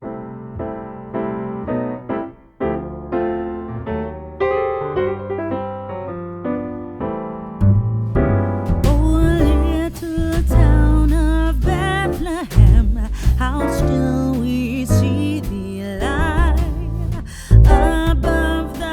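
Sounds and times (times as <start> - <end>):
piano chords: 0.0 - 18.9
bass: 2.7 - 18.9
person singing: 8.9 - 18.9.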